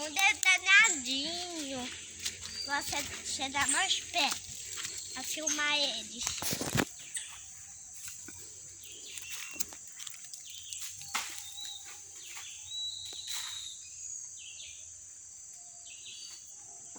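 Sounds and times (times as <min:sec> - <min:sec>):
high chirping calls: 0:00.0 - 0:14.8
snaps and rustles in foliage: 0:06.2 - 0:07.0, 0:09.1 - 0:12.4.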